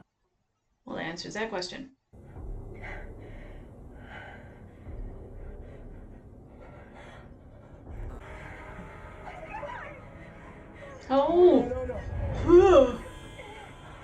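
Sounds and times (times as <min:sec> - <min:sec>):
heavy frightened breathing and gasps: 0:02.2 - 0:14.0
steady low rumble: 0:02.2 - 0:14.0.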